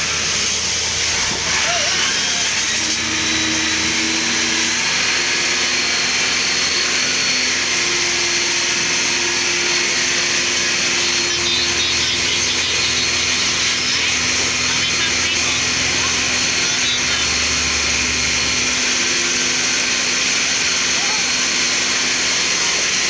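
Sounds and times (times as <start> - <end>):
engine running: 0.0 - 23.0
hissing water spray: 0.0 - 23.0.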